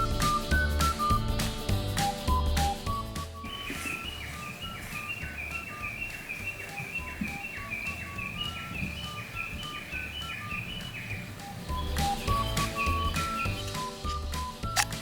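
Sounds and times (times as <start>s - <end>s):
chirpy high-note music: 3.4s - 15.0s.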